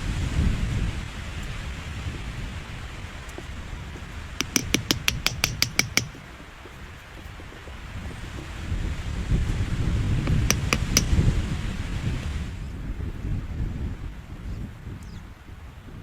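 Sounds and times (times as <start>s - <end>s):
wind gusting against microphone: 0.0s - 16.0s
rapid sharp clicks: 4.4s - 6.2s, 10.3s - 11.1s.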